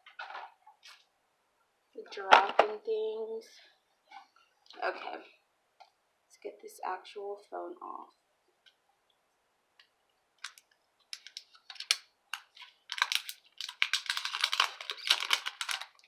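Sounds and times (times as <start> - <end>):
plastic packaging crinkling: 10.4 - 16.0.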